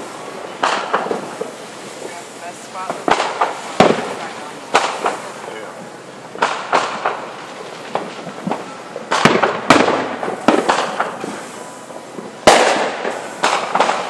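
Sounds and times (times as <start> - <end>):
fireworks bangs echoing: 0.0 - 14.0.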